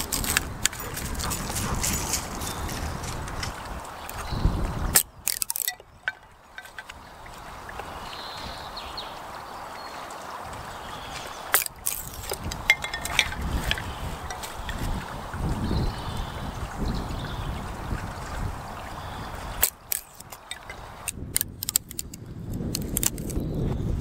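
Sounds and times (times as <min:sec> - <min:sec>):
stream rushing: 0:00.0 - 0:22.0
sharp clicks and snaps: 0:04.9 - 0:06.9, 0:19.6 - 0:23.4.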